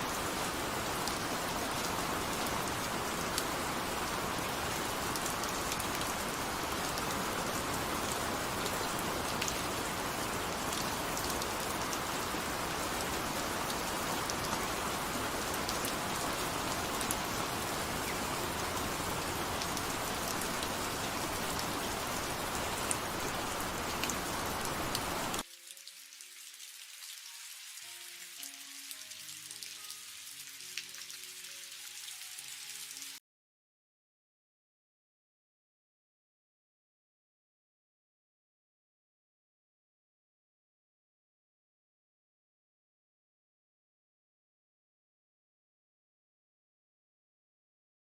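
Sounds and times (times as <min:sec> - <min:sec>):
steady rain patter: 0:00.0 - 0:33.2.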